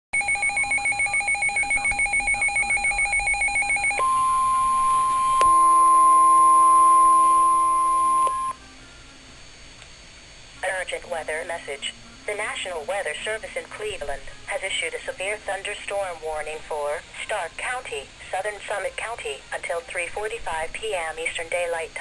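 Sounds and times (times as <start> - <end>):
lower alarm tone: 0.2 - 8.6
pulsing electronic alert tone: 0.2 - 8.6
steady high alarm tone: 0.2 - 8.6
faint hum: 0.2 - 22.0.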